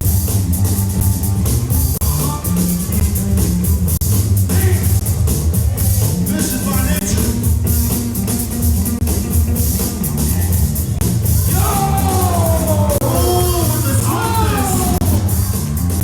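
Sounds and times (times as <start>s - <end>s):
guitar: 0.0s - 16.0s
loud music with heavy bass: 0.0s - 16.0s
drum beat: 11.1s - 16.0s.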